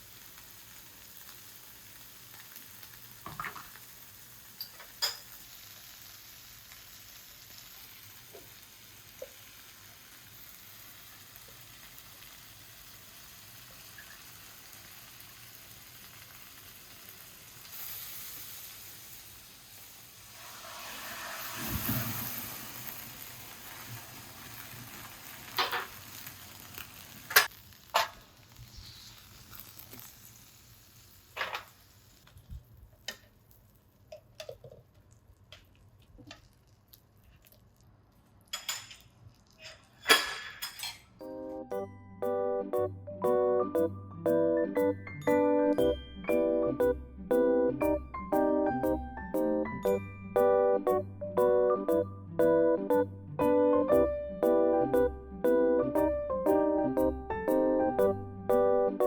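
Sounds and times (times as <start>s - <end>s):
food sizzling in a pan: 0.0s - 41.2s.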